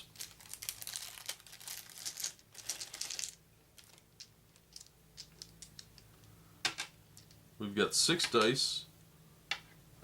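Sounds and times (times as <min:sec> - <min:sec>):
plastic dice rustling and clicking: 0:02.1 - 0:06.1.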